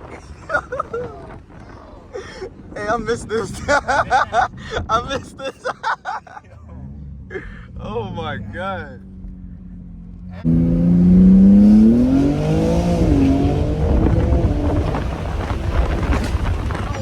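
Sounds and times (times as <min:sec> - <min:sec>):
car engine accelerating: 0:06.4 - 0:17.0.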